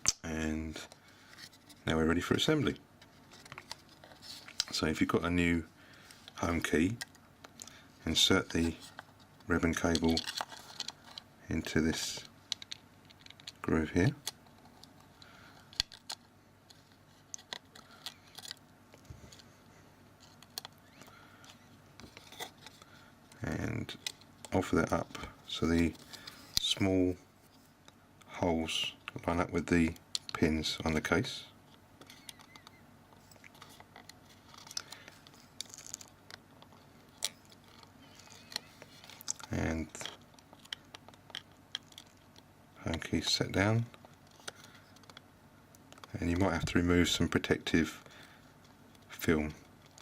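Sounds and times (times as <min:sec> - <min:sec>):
crinkly rustle: 0:08.5 - 0:11.3.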